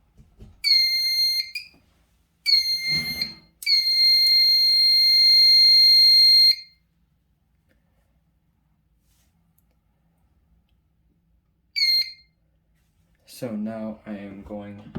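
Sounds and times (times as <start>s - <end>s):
piezo buzzer beeping: 2.5s - 6.6s.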